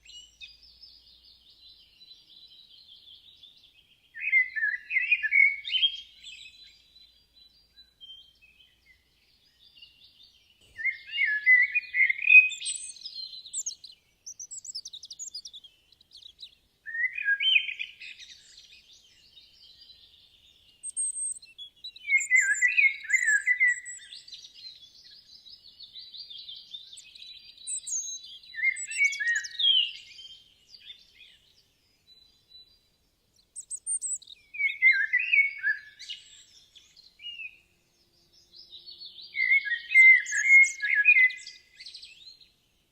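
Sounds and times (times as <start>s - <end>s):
high bird chirps and twittering: 9.6s - 32.3s, 33.4s - 37.5s, 38.3s - 42.4s.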